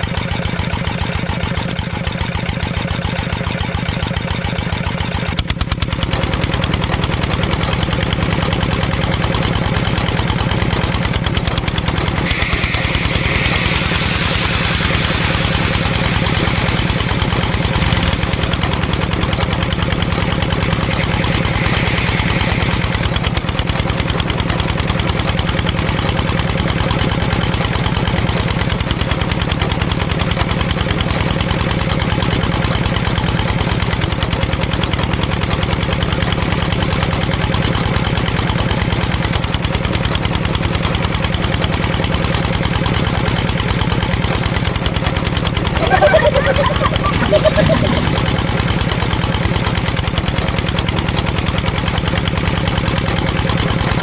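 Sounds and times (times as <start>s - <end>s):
small motor running: 12.1s - 23.7s, 45.4s - 48.2s.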